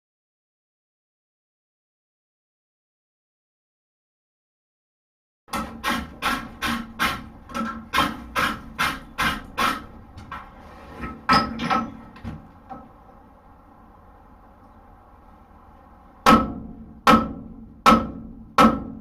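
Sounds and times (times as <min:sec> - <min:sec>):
hammer striking anvil: 0:16.3 - 0:19.0.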